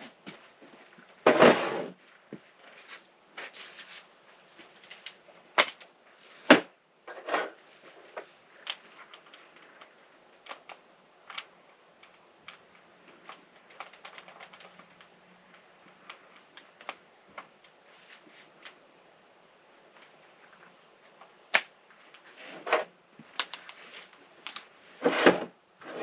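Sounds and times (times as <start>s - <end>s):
tool handling clicks and clatter: 19.9s - 25.3s.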